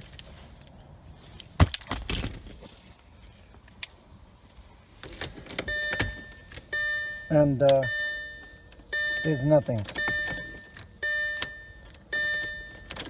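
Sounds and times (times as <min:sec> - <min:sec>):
dashboard chime tone: 0:06.8 - 0:12.7
ignition key clicks and knocks: 0:09.7 - 0:13.0.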